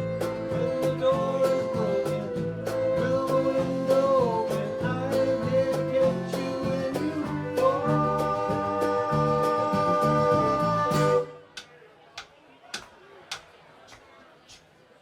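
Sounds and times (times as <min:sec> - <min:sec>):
live country band playing: 0:00.0 - 0:11.4.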